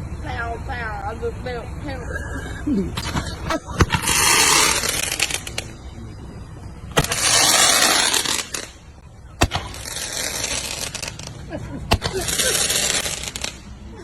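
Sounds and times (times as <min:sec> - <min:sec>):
firework hissing: 0:02.9 - 0:06.0, 0:06.7 - 0:14.0
roman candle pops: 0:09.4 - 0:09.8, 0:11.9 - 0:12.2.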